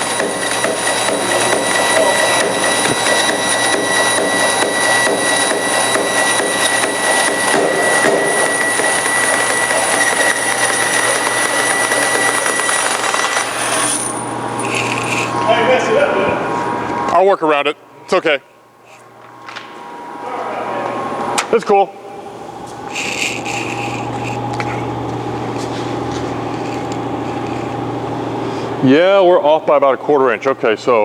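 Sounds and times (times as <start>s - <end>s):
bandsaw cutting plastic: 0.0s - 15.4s, 22.9s - 24.7s
high whine: 0.0s - 18.0s, 18.7s - 31.0s
low machine hum: 0.0s - 31.0s.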